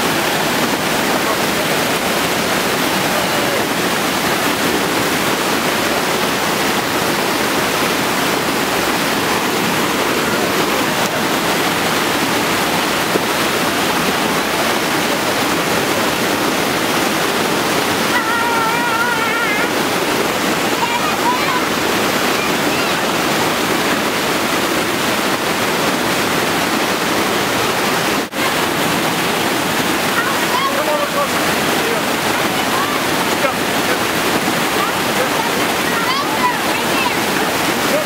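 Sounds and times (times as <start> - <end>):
waterfall rushing: 0.0 - 38.0.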